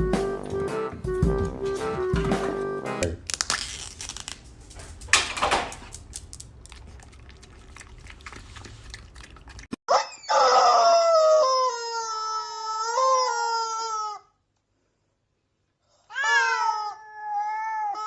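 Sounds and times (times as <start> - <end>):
pet howling: 16.1 - 18.0.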